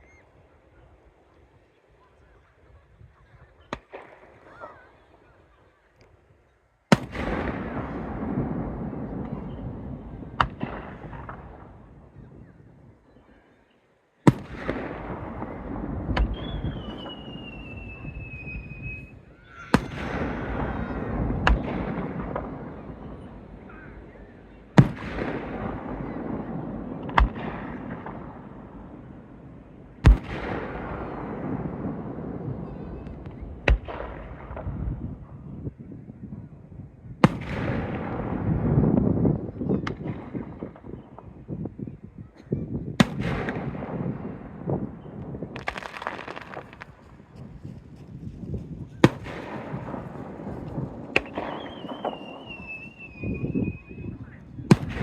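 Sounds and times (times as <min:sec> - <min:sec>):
fireworks bangs: 0:06.9 - 0:12.5, 0:14.3 - 0:35.8, 0:37.2 - 0:41.6, 0:42.8 - 0:55.0
rumbling crackling echo: 0:06.9 - 0:12.8, 0:14.3 - 0:41.8, 0:43.0 - 0:55.0
falling firework whistle: 0:16.2 - 0:20.8, 0:51.2 - 0:54.5.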